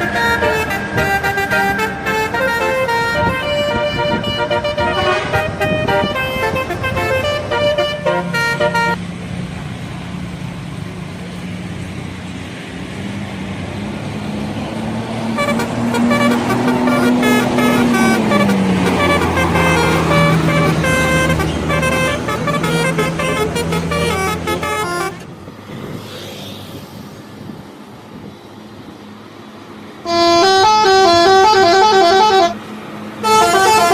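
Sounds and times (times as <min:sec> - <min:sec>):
bus horn playing a tune: 0:00.0 - 0:09.0, 0:15.3 - 0:25.3, 0:30.0 - 0:33.9
bus engine drone: 0:00.0 - 0:33.9.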